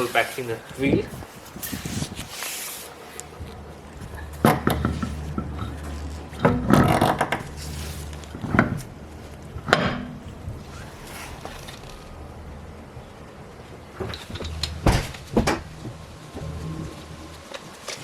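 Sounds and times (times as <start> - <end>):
car wheel knocking and clanking: 4.0 - 7.6, 14.0 - 16.0.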